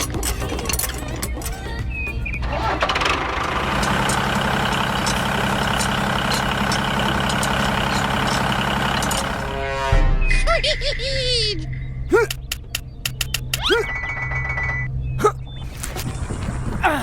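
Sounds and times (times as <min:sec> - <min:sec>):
small engine starting and running: 0:00.3 - 0:09.5.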